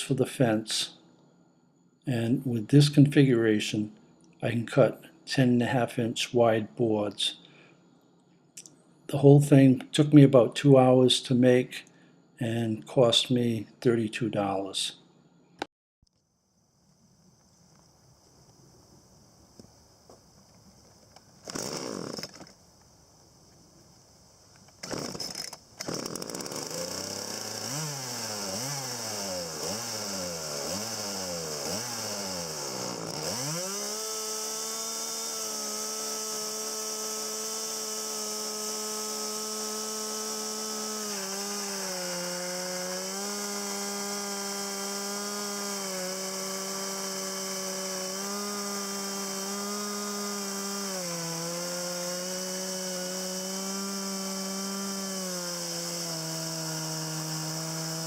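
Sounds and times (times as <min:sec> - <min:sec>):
chainsaw revving and cutting log: 0:21.4 - 0:22.5, 0:24.8 - 0:58.0.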